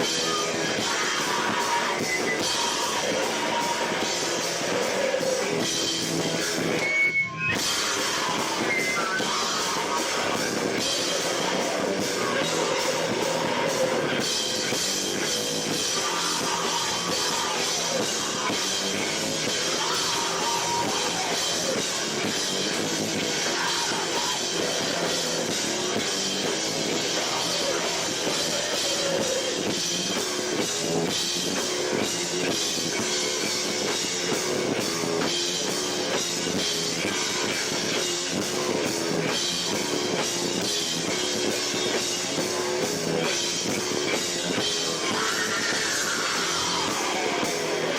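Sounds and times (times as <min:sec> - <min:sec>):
drum kit: 0:00.0 - 0:47.9
electric guitars: 0:00.0 - 0:47.9
live rock band playing: 0:00.0 - 0:47.9.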